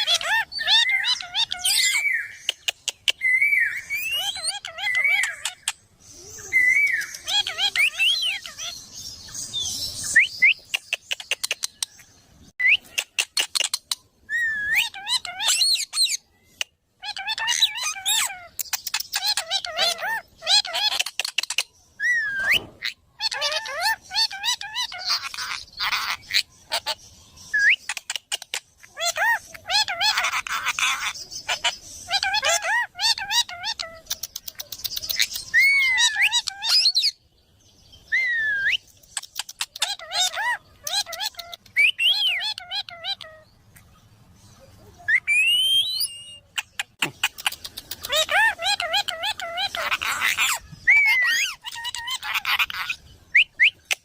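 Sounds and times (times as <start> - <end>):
parrot warbling calls: 0.0 - 2.4, 3.3 - 5.7, 6.4 - 8.7, 14.3 - 16.1, 17.0 - 18.6, 19.2 - 21.1, 23.2 - 27.0, 29.0 - 34.1, 35.1 - 37.1, 39.6 - 43.4, 45.1 - 53.9
parrot chirping and whistling: 12.6 - 16.2, 22.0 - 26.9, 35.1 - 37.1, 38.1 - 43.4, 45.0 - 54.0.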